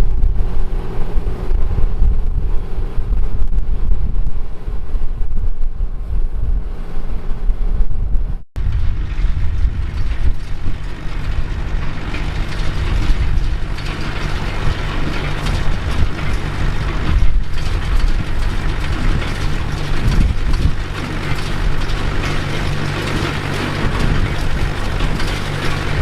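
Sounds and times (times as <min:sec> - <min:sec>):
baler chains and gears clattering: 0:08.6 - 0:26.0
tractor diesel engine running: 0:08.6 - 0:26.0.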